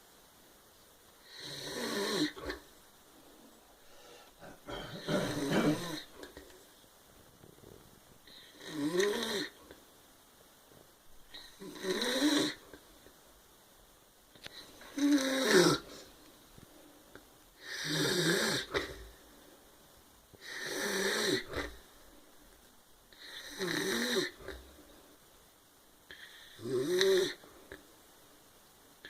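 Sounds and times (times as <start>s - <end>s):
man snoring: 1.2s - 2.6s, 4.0s - 6.2s, 8.3s - 9.6s, 11.4s - 12.6s, 14.9s - 15.9s, 17.6s - 19.0s, 20.4s - 21.8s, 23.2s - 24.6s, 26.4s - 27.4s.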